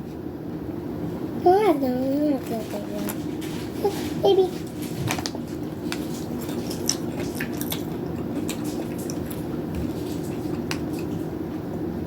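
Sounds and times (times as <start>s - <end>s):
popcorn crunching: 2.2s - 11.4s.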